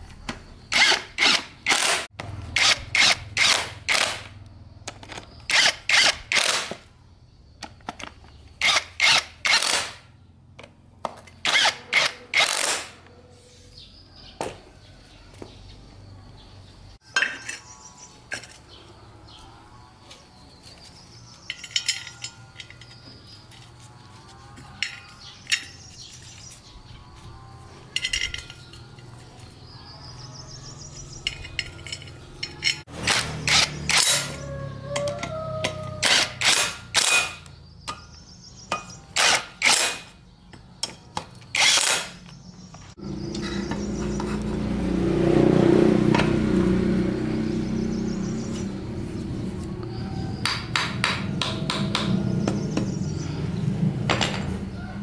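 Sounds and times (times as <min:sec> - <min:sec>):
tools clicking on metal: 0:00.7 - 0:06.9, 0:11.3 - 0:13.1, 0:21.4 - 0:23.7, 0:27.9 - 0:29.1, 0:30.9 - 0:34.4, 0:35.0 - 0:42.4
loud mechanical running: 0:32.6 - 0:34.4.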